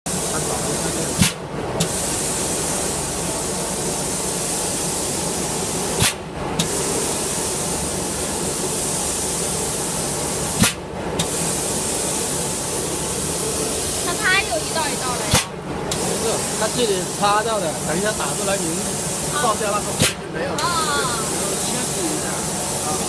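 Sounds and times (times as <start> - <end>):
sandblaster hissing: 0.1 - 23.0
sharp click: 10.6 - 11.3, 20.0 - 20.2.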